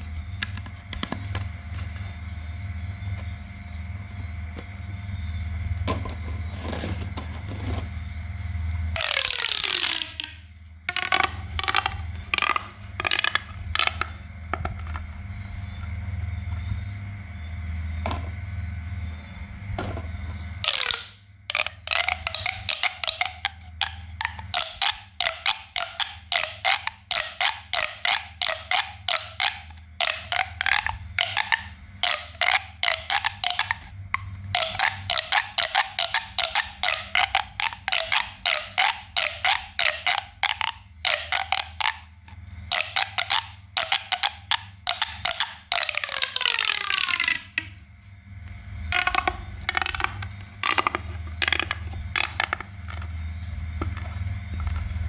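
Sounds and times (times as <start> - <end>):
pop toy popping: 9.0 - 14.8, 20.6 - 42.1, 42.7 - 47.7, 48.9 - 53.1.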